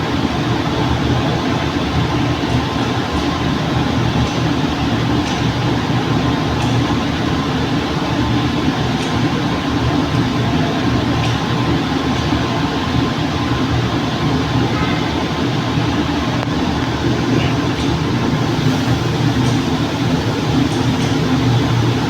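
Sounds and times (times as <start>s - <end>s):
glass-cutting machine drone: 13.5s - 22.0s.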